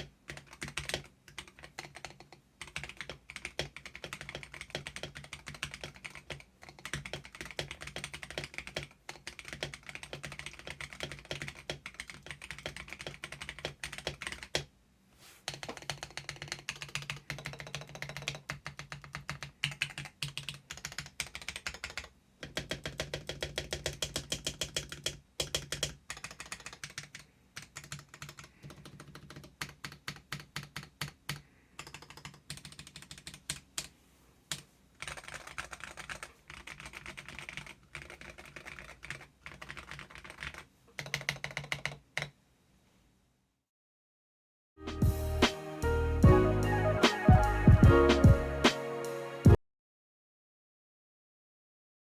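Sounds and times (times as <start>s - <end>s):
mechanical keyboard typing: 0.0s - 14.7s, 15.5s - 33.9s, 34.5s - 42.4s.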